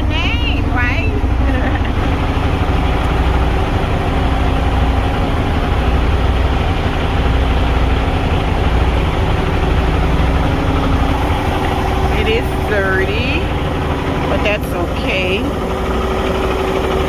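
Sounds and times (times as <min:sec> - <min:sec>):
diesel truck engine idling: 0:00.0 - 0:17.0.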